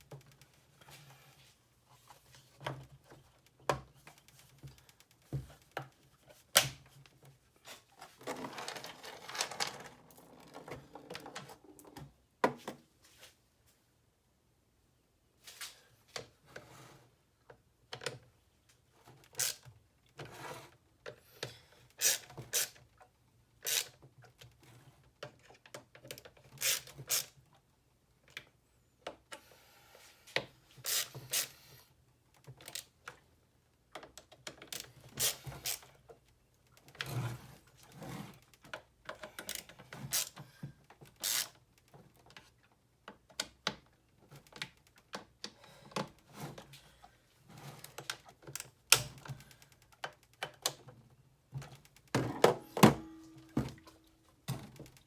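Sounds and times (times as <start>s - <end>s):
small hard parts clicking and tapping: 47.8s - 55.0s.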